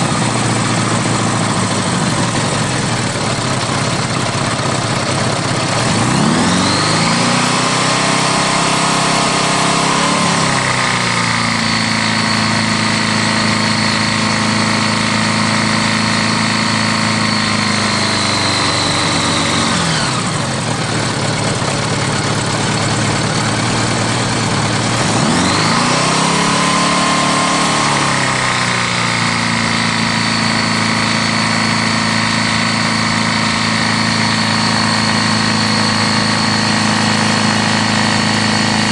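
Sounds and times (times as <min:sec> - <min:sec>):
motorcycle engine idling and revving: 0:00.0 - 0:38.9.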